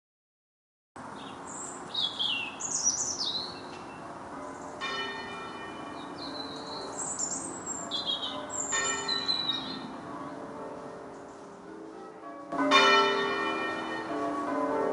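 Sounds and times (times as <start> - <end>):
birds chirping and singing: 1.2 - 4.0, 6.0 - 9.9
church bell tolling: 3.4 - 14.9.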